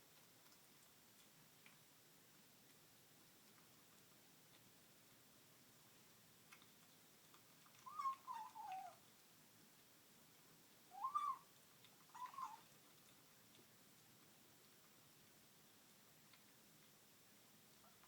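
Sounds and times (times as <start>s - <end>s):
cat mewing while eating: 7.6s - 9.0s, 10.9s - 13.0s.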